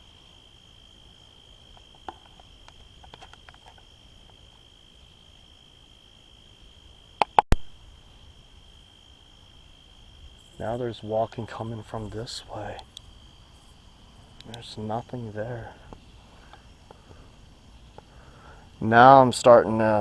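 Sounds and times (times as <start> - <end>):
crickets chirping: 0.0 - 20.0
faint ticks: 1.7 - 4.6, 12.6 - 13.1, 14.3 - 14.8, 15.9 - 17.2, 17.9 - 18.1
sharp loud clicks: 7.2 - 7.7.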